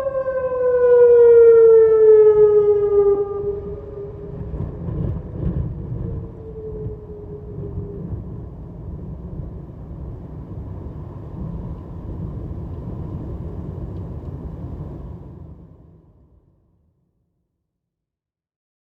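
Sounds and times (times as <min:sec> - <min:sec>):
warning siren winding down: 0:00.0 - 0:08.6
wind buffeting microphone: 0:02.5 - 0:15.8.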